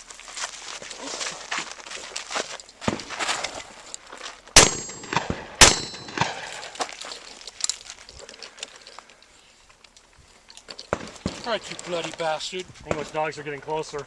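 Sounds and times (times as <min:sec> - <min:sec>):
gun handling clicks and knocks: 0:02.0 - 0:13.2
shotgun shots: 0:04.6 - 0:06.8.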